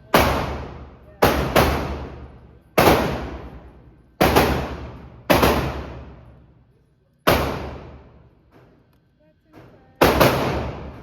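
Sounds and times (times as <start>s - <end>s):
pistol shots echoing: 0.0s - 6.5s, 7.3s - 8.3s, 10.0s - 11.0s.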